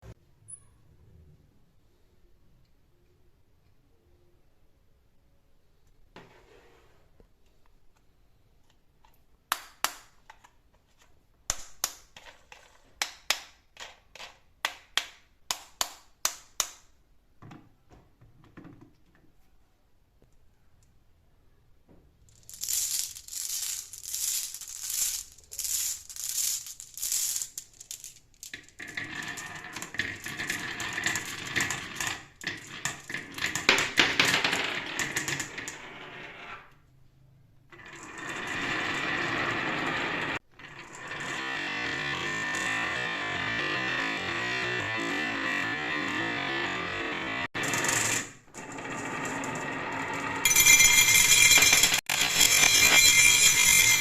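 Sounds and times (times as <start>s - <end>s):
marbles clacking on wooden run: 22.3s - 35.8s, 40.6s - 54.0s.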